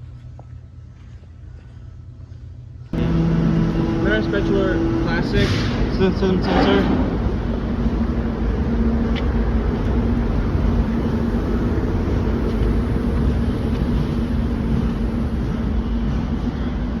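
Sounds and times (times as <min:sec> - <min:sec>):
factory machinery rumble: 0:00.0 - 0:17.0
low hum: 0:00.0 - 0:17.0.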